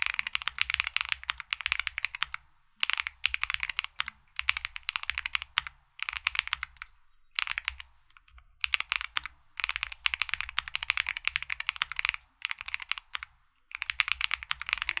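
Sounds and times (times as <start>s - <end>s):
mechanical keyboard typing: 0.0s - 15.0s.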